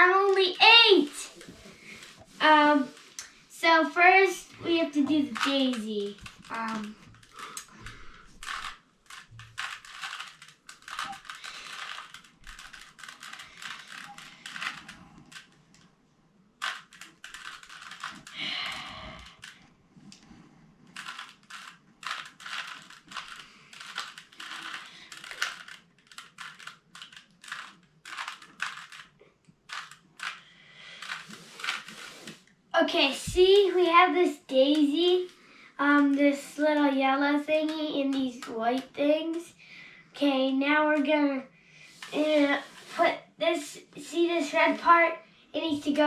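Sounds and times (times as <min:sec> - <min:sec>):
puzzle cube layers clicking: 0:05.0 - 0:15.9, 0:16.6 - 0:19.6, 0:20.9 - 0:32.4.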